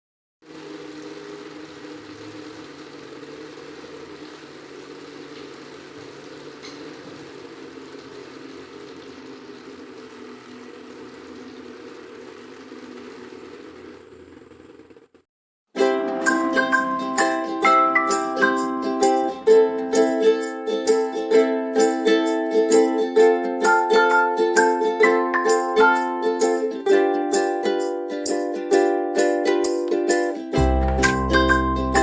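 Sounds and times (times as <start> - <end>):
running water: 0.4 - 14.2
water pump humming: 0.4 - 15.2.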